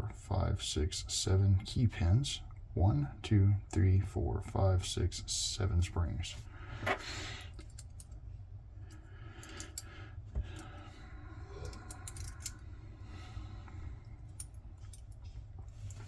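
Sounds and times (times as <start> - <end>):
steady low hum: 0.0 - 16.0
small metal lock parts clicking: 7.5 - 8.2, 8.9 - 9.9, 11.6 - 12.7.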